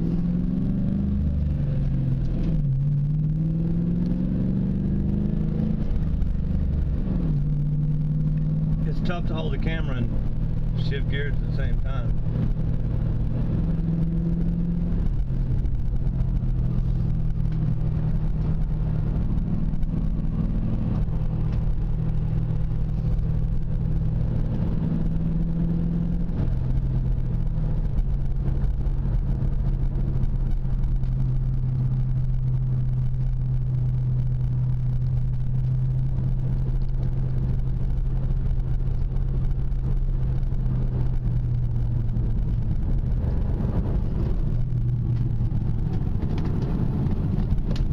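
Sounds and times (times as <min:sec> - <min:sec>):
car engine running while driving: 0:00.0 - 0:47.9.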